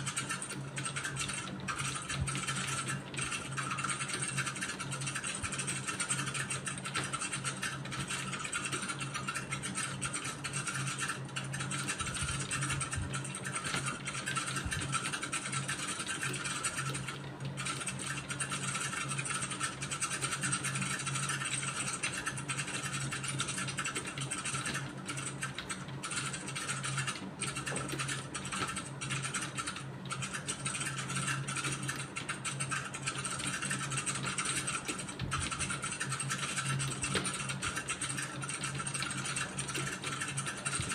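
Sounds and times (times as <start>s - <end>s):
fast keyboard typing: 0.0s - 40.9s
steady low hum: 0.0s - 40.9s.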